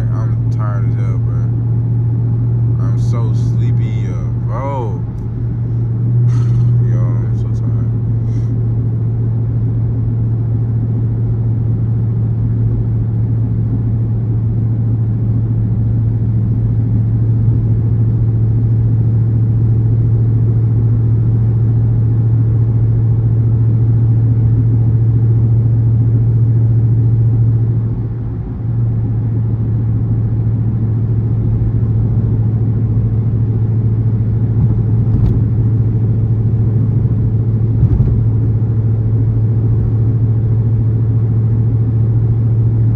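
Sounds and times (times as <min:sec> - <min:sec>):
car engine droning: 0:00.0 - 0:42.9
tyre and road noise: 0:02.7 - 0:08.4, 0:32.7 - 0:39.1.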